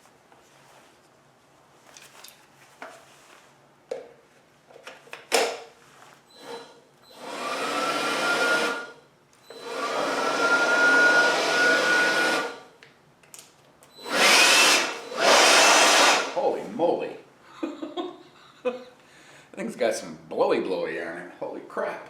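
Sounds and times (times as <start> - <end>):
cordless blower whine and air rush: 6.4 - 12.7, 14.0 - 16.6.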